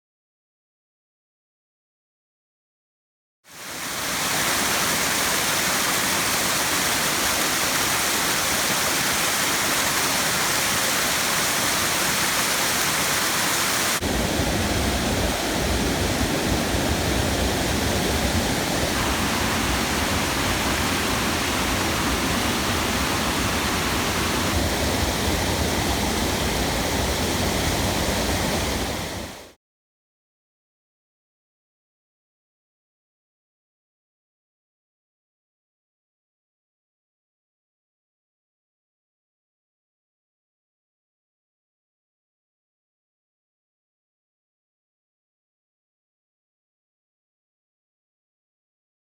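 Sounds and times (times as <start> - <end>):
waterfall rushing: 3.6 - 29.5.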